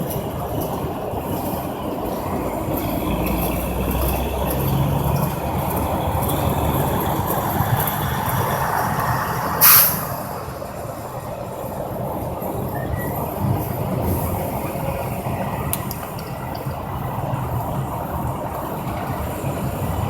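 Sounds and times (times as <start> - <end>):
heavy trucks passing: 0.0 - 20.0
air brake hiss: 9.6 - 10.4.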